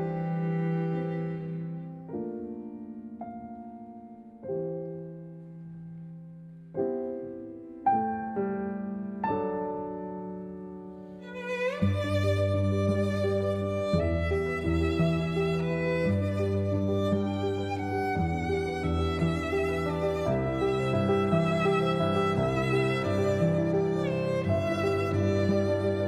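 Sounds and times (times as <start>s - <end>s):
slow solo piano chords: 0.0s - 26.0s.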